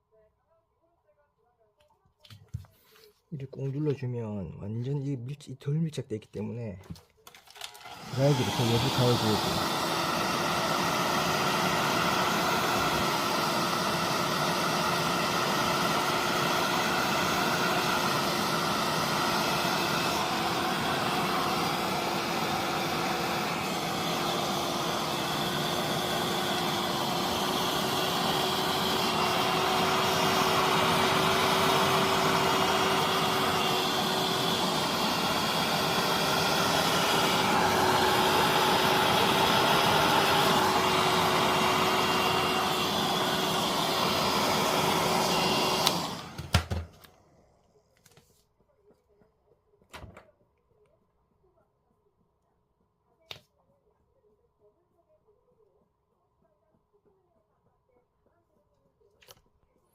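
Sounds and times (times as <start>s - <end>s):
hair dryer running: 6.8s - 47.8s.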